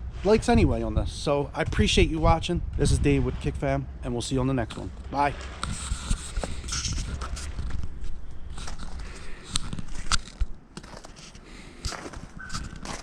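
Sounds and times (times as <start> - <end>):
low rumble: 0.0 - 10.6
footsteps crunching snow: 4.6 - 13.0.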